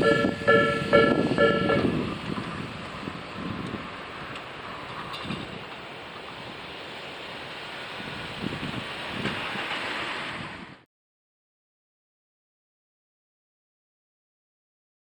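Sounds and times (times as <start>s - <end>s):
train rushing past on rails: 0.0s - 10.9s.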